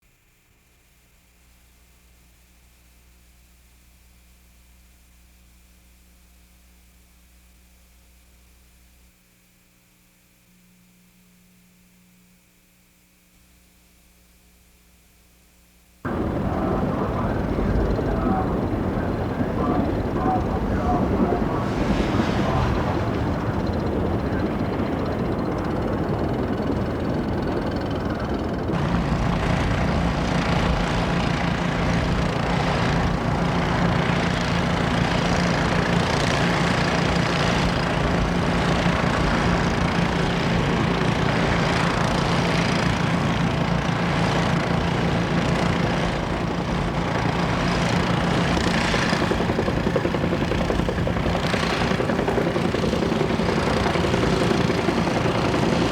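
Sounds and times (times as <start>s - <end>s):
steady low hum: 3.0s - 55.9s
helicopter engine and rotor drone: 16.0s - 55.9s.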